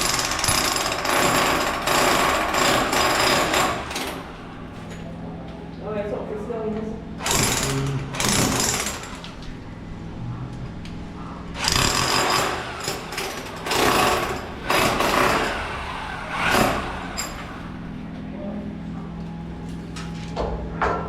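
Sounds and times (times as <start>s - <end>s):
low hum: 9.3s - 11.6s.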